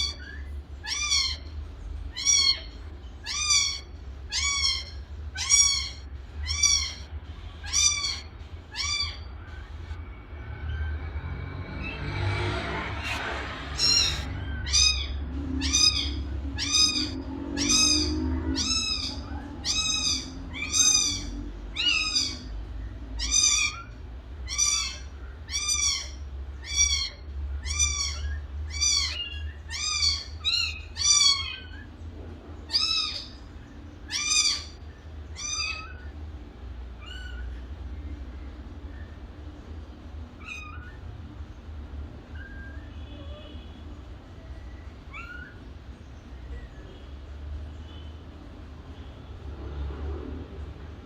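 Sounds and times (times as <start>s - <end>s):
kitten meowing: 0.0s - 1.5s, 2.1s - 9.3s, 13.8s - 22.5s, 34.1s - 36.1s
steady low hum: 0.0s - 49.7s.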